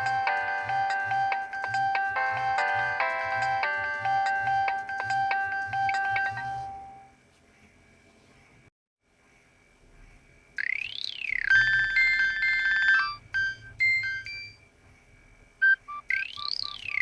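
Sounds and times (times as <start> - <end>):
polyphonic ringtone: 0.0 - 7.1, 10.9 - 14.6, 15.6 - 17.0
faint hum: 0.0 - 17.0.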